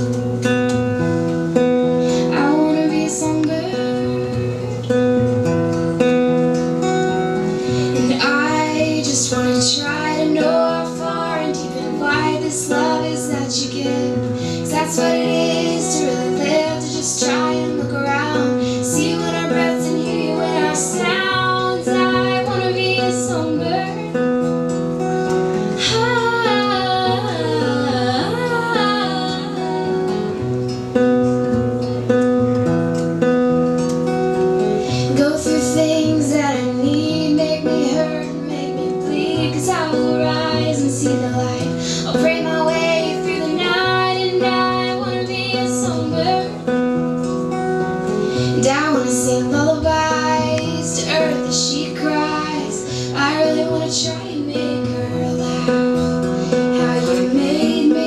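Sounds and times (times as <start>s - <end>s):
acoustic guitar chords: 0.0s - 58.0s
women singing: 2.0s - 4.9s, 7.7s - 24.3s, 25.5s - 30.4s, 34.8s - 46.9s, 48.2s - 58.0s.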